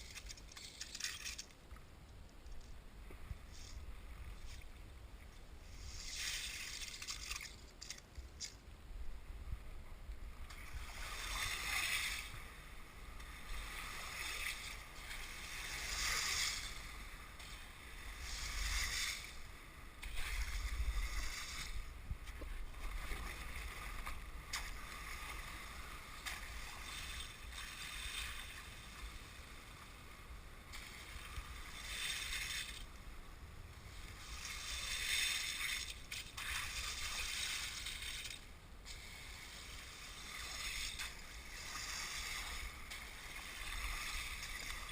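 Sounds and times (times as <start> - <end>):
ice tinkling and crackling on hull: 0.0 - 8.7, 33.9 - 44.9.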